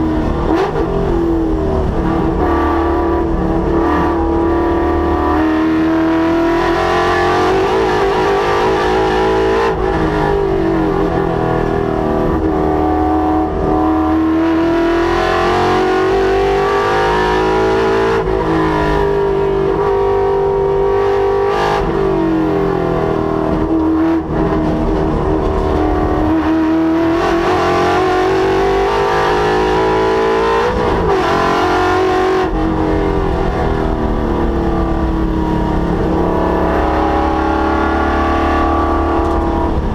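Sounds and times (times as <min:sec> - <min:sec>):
car engine accelerating: 0:00.0 - 0:39.9.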